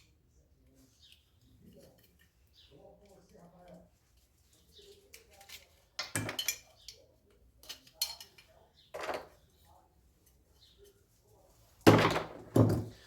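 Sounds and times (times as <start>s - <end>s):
metal tools clinking: 4.6s - 7.0s, 7.6s - 9.4s.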